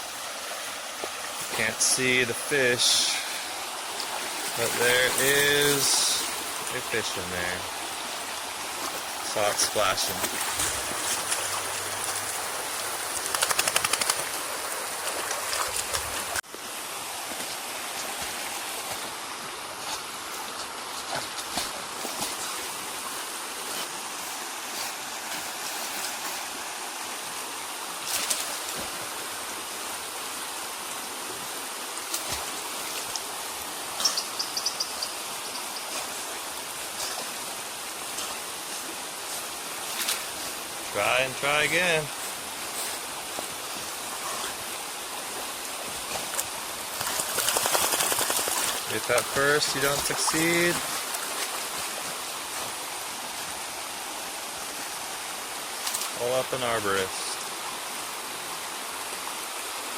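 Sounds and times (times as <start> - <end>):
creek water rushing: 0.0 - 59.9.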